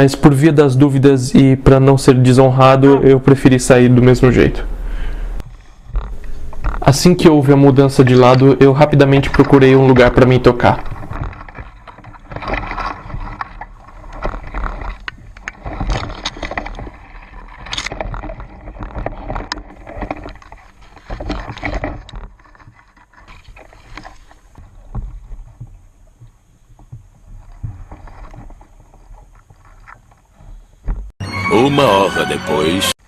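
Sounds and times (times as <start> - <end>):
rustling through brush and dry leaves: 8.9 - 30.8.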